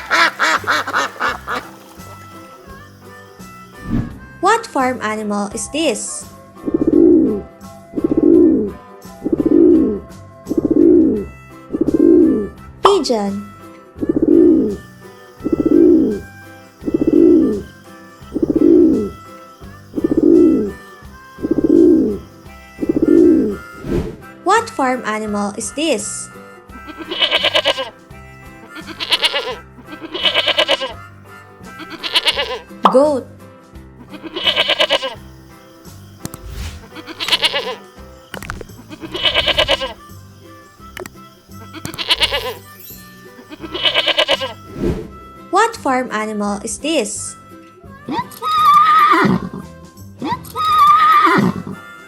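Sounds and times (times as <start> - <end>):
goat bleating: 0.0 - 1.9, 26.8 - 28.0, 28.6 - 31.0, 31.7 - 32.7, 34.0 - 35.2, 36.8 - 37.9, 38.8 - 40.1, 41.6 - 42.7, 43.4 - 44.6, 48.3 - 49.6
pigeon cooing: 0.0 - 2.2
background music: 0.0 - 52.0.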